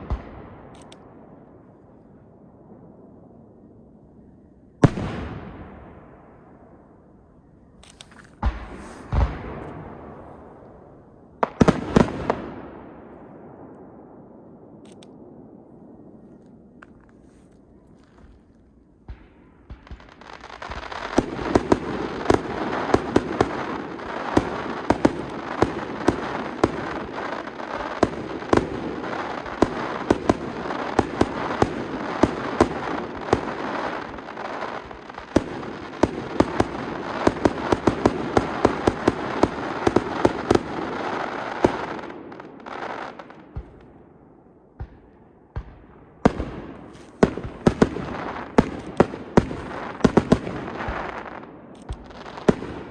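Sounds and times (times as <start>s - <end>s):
fireworks crackle: 7.8s - 10.7s, 16.2s - 43.4s, 46.3s - 52.9s
fireworks bursting with bangs: 8.4s - 13.7s, 18.1s - 43.9s, 44.7s - 52.9s.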